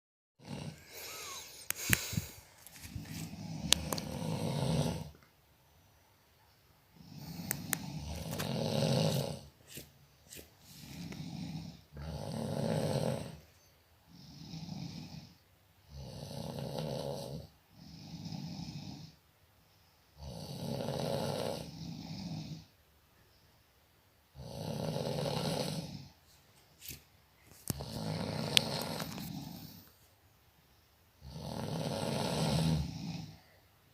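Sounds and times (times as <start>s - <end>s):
person snoring: 0.4s - 5.2s, 6.9s - 9.6s, 10.6s - 13.5s, 14.1s - 19.2s, 20.2s - 22.7s, 24.4s - 26.2s, 27.7s - 29.9s, 31.2s - 33.6s.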